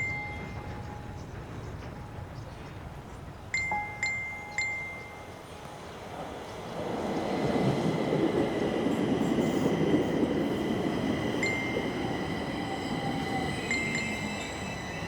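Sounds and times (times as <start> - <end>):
train rumbling on rails: 0.0 - 15.0
thin steady high tone: 11.3 - 15.0.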